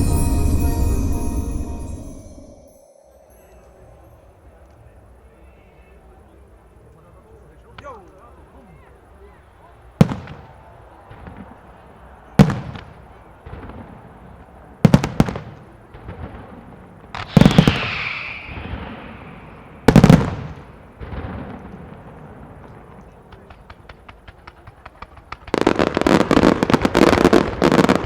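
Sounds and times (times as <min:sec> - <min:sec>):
fireworks crackling tail: 0:00.0 - 0:05.1, 0:12.4 - 0:28.0
firework shells bursting: 0:17.2 - 0:21.8.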